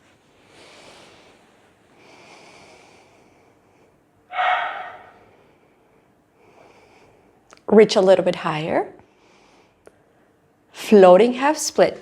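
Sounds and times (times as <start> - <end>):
woman breathing: 0.4 - 7.4.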